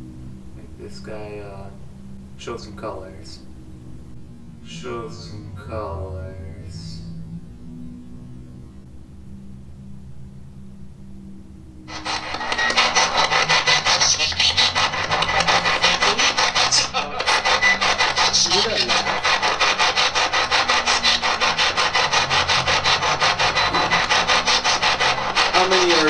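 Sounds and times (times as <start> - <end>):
gliding radio sound: 11.9 - 26.0
pulsing radio static: 11.9 - 26.0.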